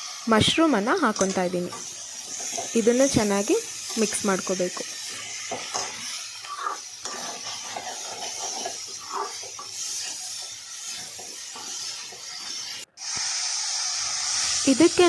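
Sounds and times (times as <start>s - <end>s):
mushrooms and onions sizzling in pan: 0.0s - 15.0s
spoon scraping a pan: 1.0s - 12.8s.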